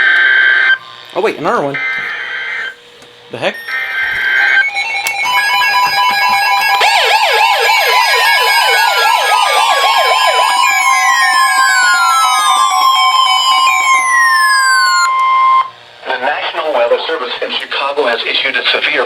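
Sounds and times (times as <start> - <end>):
electronic alert tones: 3.6 - 15.7
siren-like warble: 3.6 - 15.8.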